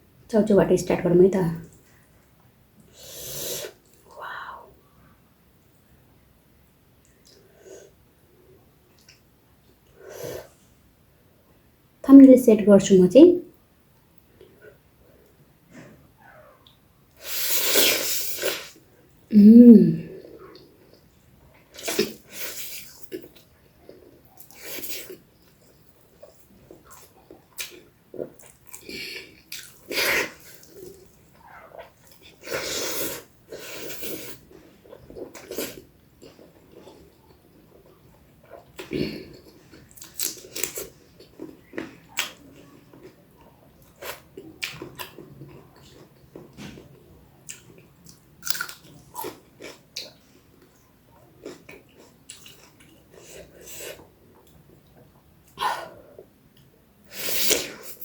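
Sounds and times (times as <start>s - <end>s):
wet chewing and mouth noises: 20.3s - 56.7s.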